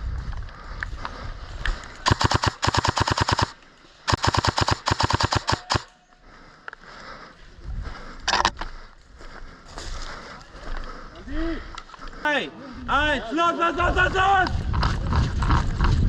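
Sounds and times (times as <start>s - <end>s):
airsoft gun full-auto bursts: 2.1s - 5.9s.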